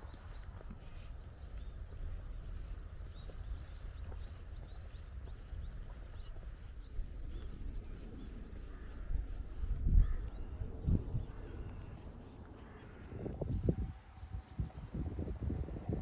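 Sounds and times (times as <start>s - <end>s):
bird chirping: 0.0s - 13.5s.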